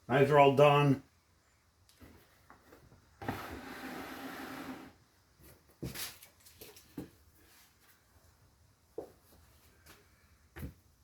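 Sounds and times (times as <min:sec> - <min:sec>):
sliding rub on workbench: 0:03.2 - 0:05.0.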